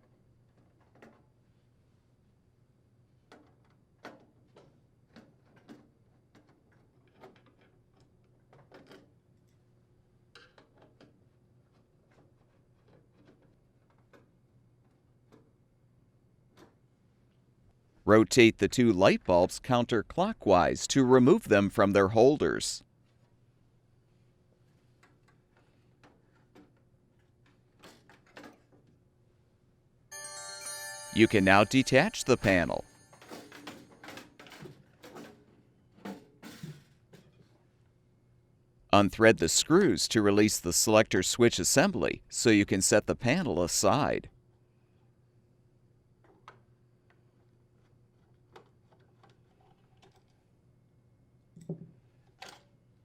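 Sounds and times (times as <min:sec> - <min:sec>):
background music tone: 0:30.1 - 0:33.8.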